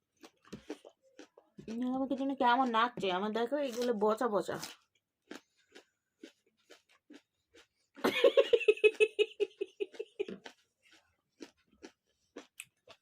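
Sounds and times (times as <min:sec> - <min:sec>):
chewing raw onion crunches: 0:00.0 - 0:03.0, 0:03.6 - 0:08.0, 0:09.9 - 0:13.0
person laughing: 0:08.0 - 0:10.4.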